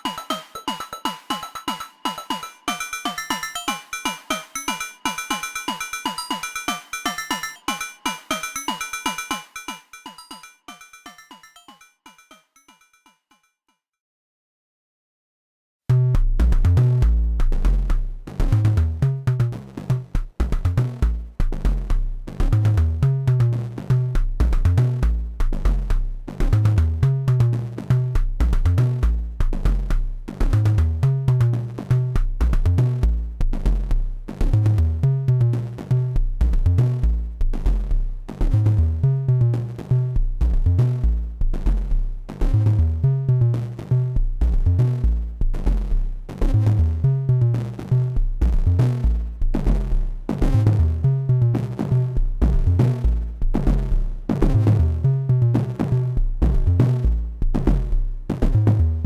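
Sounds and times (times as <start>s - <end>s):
synthesized percussion hits: 0.0s - 12.4s
deep pitched drum tones: 15.9s - 23.0s.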